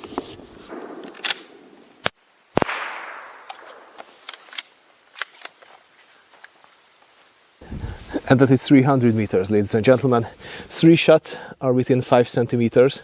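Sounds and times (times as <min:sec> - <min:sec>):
rifle shot with echo: 0:00.7 - 0:04.0
rifle mechanism clicks: 0:03.4 - 0:05.7.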